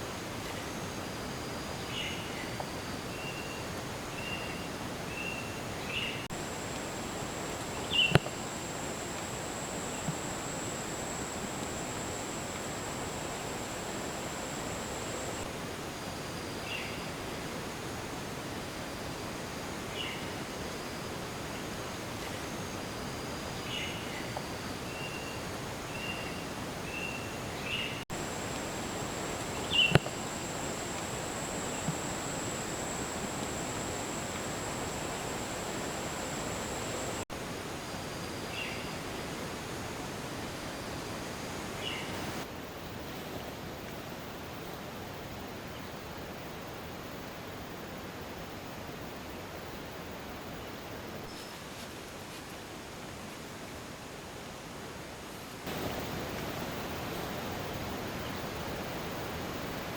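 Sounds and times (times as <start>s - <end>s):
steady high-pitched tone: 6.3s - 15.6s, 28.1s - 37.3s
sharp clicks: 28.2s - 37.2s
mountain stream rushing: 55.7s - 59.9s.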